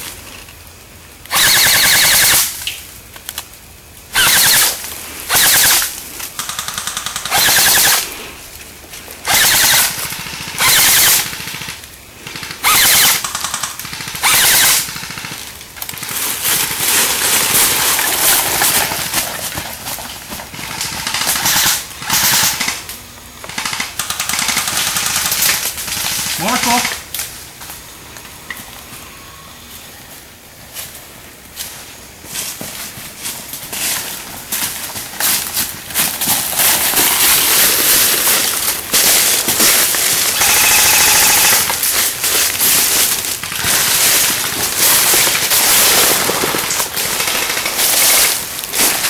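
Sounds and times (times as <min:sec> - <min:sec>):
airsoft rifles firing bursts: 0:01.3 - 0:02.8, 0:04.1 - 0:08.2, 0:09.2 - 0:19.3, 0:20.5 - 0:27.0, 0:34.6 - 0:49.0.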